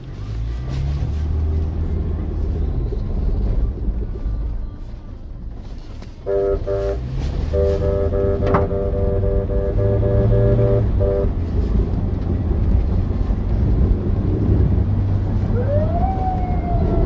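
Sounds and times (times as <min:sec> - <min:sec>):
vehicle engine and road rumble: 0:00.0 - 0:17.0
multi-tone vehicle horn honking: 0:06.1 - 0:11.7.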